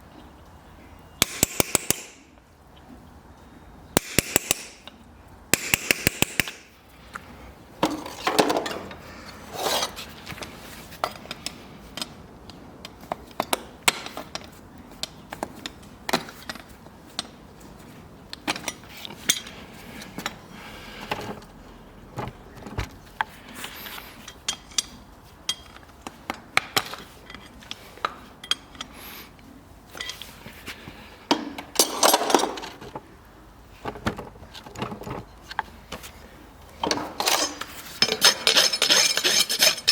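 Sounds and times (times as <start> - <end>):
metal tools tapping on hoof: 1.2 - 2.2, 4.0 - 4.9
tool scraping hoof: 9.3 - 10.1, 37.4 - 39.9.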